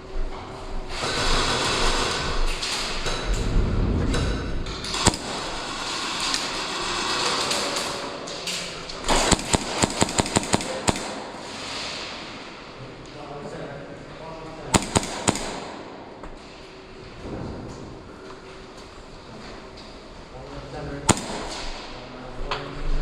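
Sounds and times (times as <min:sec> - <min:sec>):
noisy rustling: 0:00.0 - 0:23.0
airsoft gun shots: 0:05.0 - 0:06.5, 0:09.0 - 0:12.4, 0:14.7 - 0:16.5, 0:21.1 - 0:22.0.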